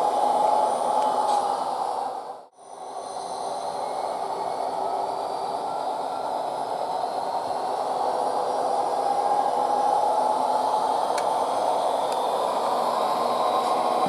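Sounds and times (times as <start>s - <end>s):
diesel locomotive engine running: 0.0s - 14.0s.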